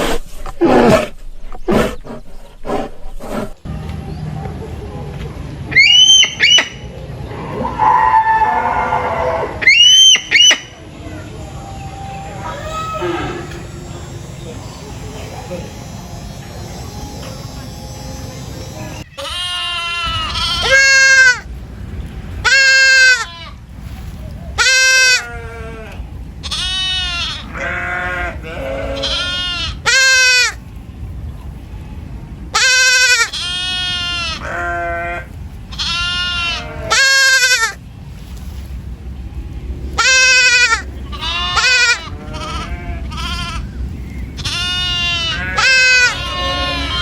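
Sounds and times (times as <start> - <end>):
goat bleating: 12.4 - 14.1, 19.2 - 21.4, 24.6 - 30.6, 32.5 - 37.8, 40.0 - 43.7, 44.4 - 47.0.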